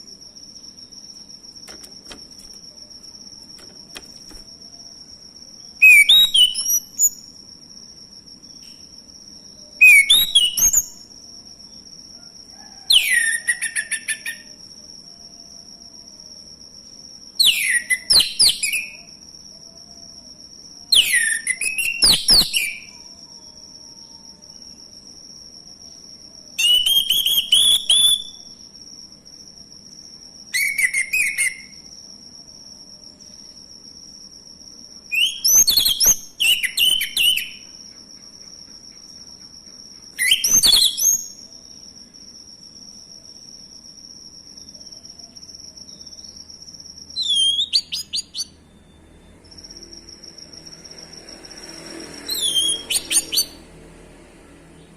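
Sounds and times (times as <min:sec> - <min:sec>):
thrush singing whistles and chirps: 0:05.6 - 0:07.6, 0:08.5 - 0:11.8, 0:12.7 - 0:15.3, 0:17.2 - 0:24.7, 0:25.4 - 0:28.7, 0:30.2 - 0:32.0, 0:35.0 - 0:38.2, 0:38.8 - 0:42.1, 0:44.6 - 0:49.8, 0:52.2 - 0:53.6.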